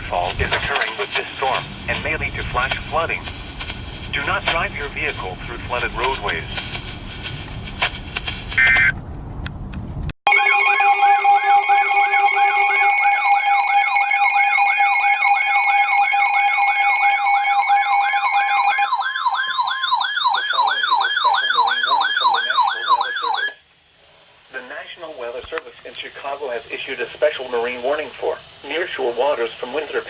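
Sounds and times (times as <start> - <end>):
warbling siren tone: 10.3 - 23.6.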